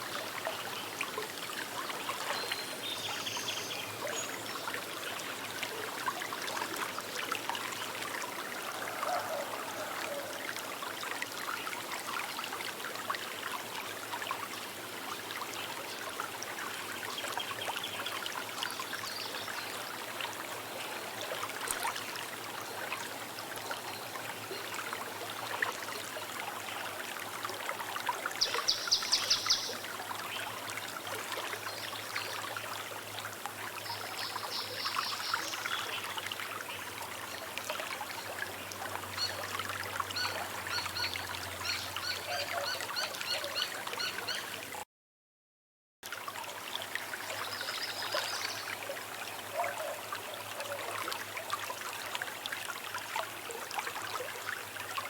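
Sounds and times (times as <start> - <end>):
river trickling over stones: 0.0 - 44.8, 46.0 - 55.0.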